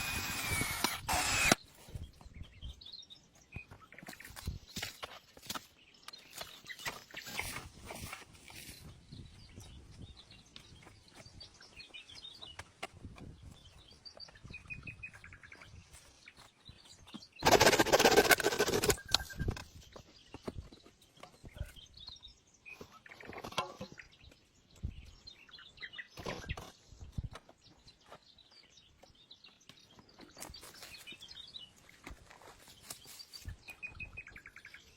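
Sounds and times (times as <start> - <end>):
small birds chirping: 0.0 - 34.9
loud rough noise: 17.4 - 19.0.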